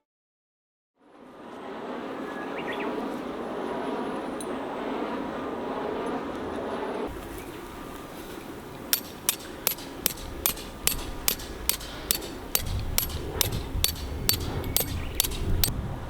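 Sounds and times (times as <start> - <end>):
sharp mechanical clicks: 8.9 - 15.7.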